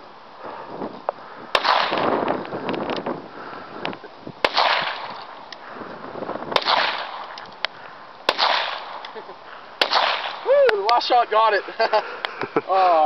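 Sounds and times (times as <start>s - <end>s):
revolver shots with echo: 6.6s - 7.2s, 8.3s - 9.0s, 9.8s - 10.4s.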